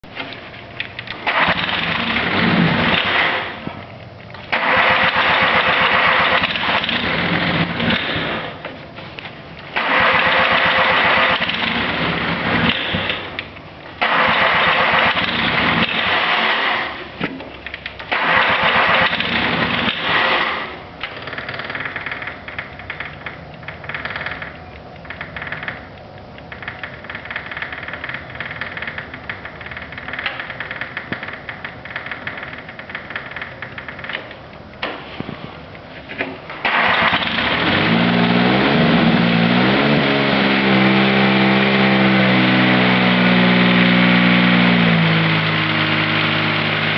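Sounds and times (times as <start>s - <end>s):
diesel engine cranking on starter: 0.1s - 3.7s, 4.3s - 8.7s, 9.6s - 17.2s, 17.8s - 35.2s, 36.4s - 46.9s
diesel engine idling: 36.5s - 46.9s.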